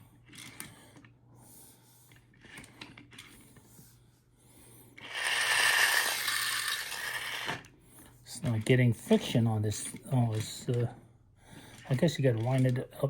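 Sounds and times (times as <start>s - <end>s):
clockwork gear whirring: 5.0s - 7.7s
toy car handling clicks: 5.0s - 7.7s, 11.7s - 12.9s.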